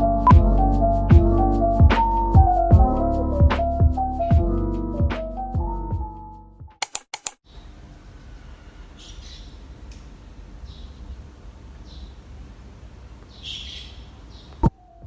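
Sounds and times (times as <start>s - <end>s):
birds chirping: 7.5s - 15.0s.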